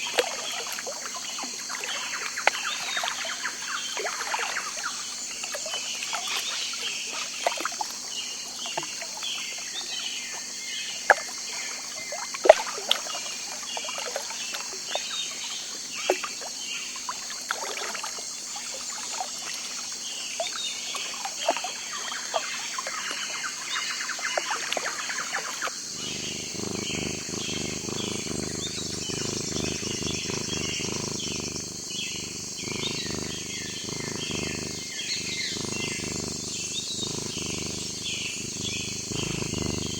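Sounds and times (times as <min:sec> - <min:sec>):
high-pitched hiss: 0:24.2 - 0:39.9
birds chirping and calling: 0:24.5 - 0:39.9.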